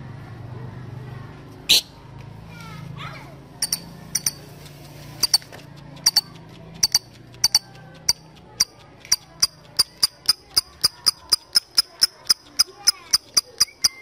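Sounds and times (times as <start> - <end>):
bird chirping: 3.6 - 8.2, 10.8 - 14.0.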